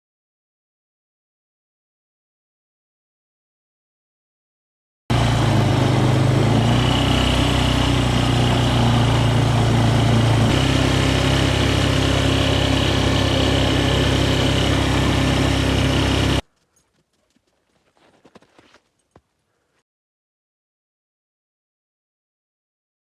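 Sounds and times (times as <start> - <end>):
small engine running: 5.1 - 16.5.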